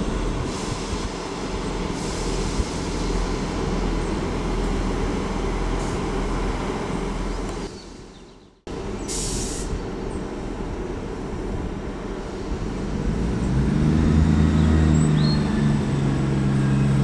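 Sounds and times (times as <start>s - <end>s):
train passing: 0.0s - 8.1s, 9.6s - 17.0s
brief high hiss: 9.1s - 9.7s.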